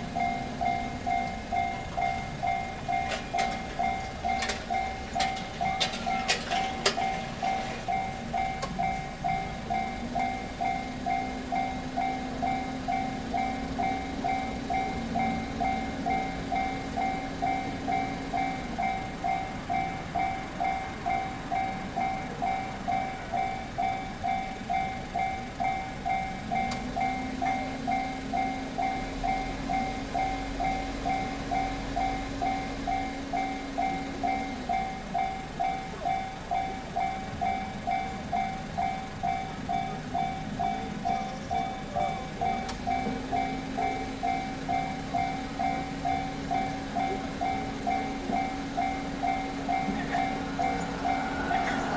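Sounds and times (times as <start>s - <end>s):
crossing warning bell ringing: 0.0s - 51.9s.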